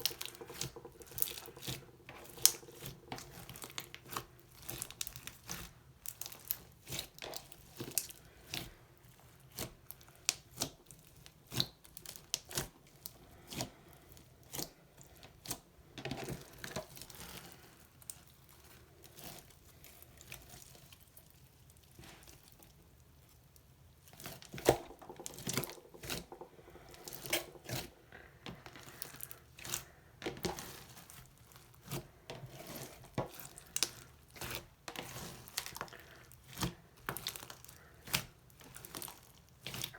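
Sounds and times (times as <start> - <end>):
slime crackling and popping: 0.0 - 8.6, 28.8 - 39.9.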